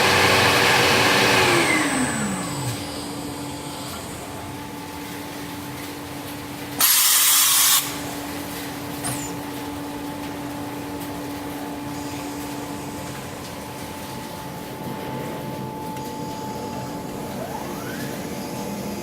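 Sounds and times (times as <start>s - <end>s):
machine humming: 0.0s - 19.0s
loud air hiss: 6.8s - 8.1s.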